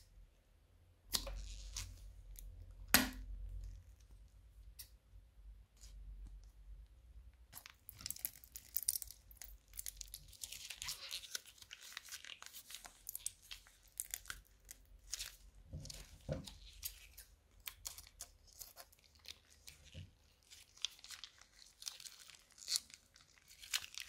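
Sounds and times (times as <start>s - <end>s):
slime squish: 1.0s - 5.0s, 7.4s - 24.0s
crunchy slime crackling: 7.5s - 24.0s.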